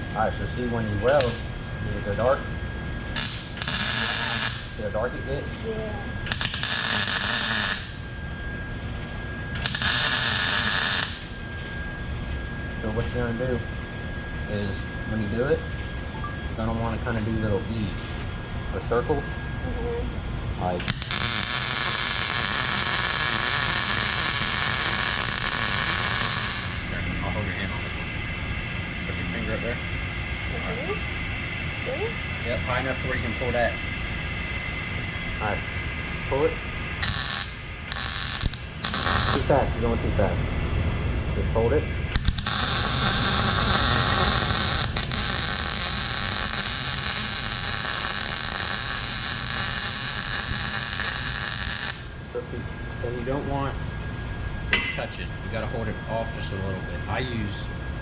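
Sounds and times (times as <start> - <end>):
welding arc hissing and crackling: 1.0 - 1.4, 3.2 - 4.9, 6.2 - 8.0, 9.6 - 11.4, 20.7 - 27.0, 36.4 - 39.6, 42.1 - 52.3.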